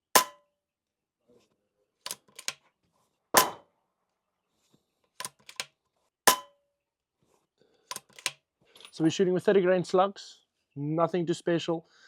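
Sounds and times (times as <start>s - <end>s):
rifle action clicks: 2.1s - 2.6s, 5.2s - 5.7s, 7.9s - 8.4s
air rifle shots: 3.4s - 3.6s.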